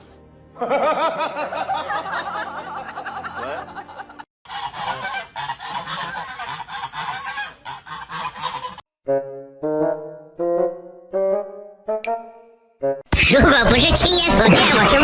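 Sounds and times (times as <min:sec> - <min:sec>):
geese honking: 0:04.5 - 0:08.8.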